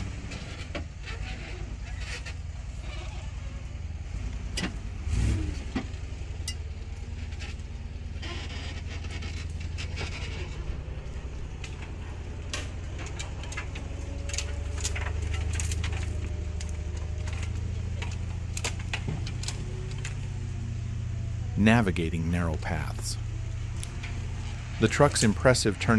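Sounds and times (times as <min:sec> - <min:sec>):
diesel truck engine running: 0:00.0 - 0:25.9
knocks and clanks: 0:05.6 - 0:20.7.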